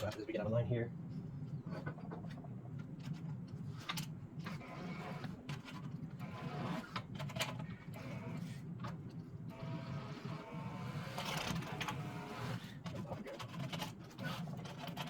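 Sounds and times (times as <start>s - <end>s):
steady low hum: 0.0s - 6.2s.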